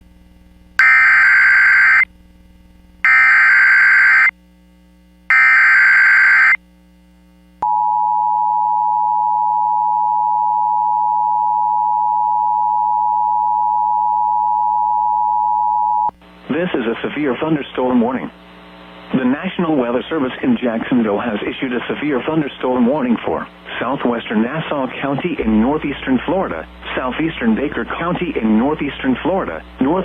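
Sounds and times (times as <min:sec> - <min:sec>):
steady warning alarm tone: 0:00.8 - 0:02.0, 0:03.1 - 0:04.3, 0:05.3 - 0:06.6.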